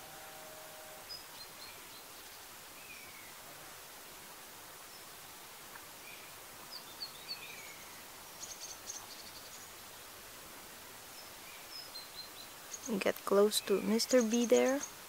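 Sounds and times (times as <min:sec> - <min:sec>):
outdoor background hiss: 0:00.0 - 0:15.0
small birds chirping: 0:01.1 - 0:03.4, 0:04.8 - 0:10.3, 0:11.0 - 0:15.0.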